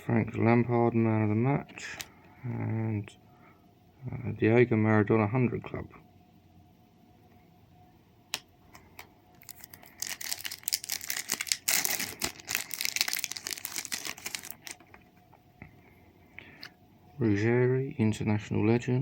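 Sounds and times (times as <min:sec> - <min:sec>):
plastic foil wrapper tearing: 0:09.4 - 0:15.0.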